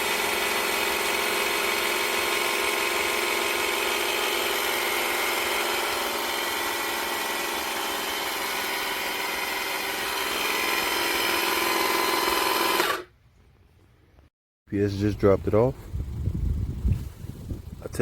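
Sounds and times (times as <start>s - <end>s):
electric car jack motor whining: 0.0s - 13.1s.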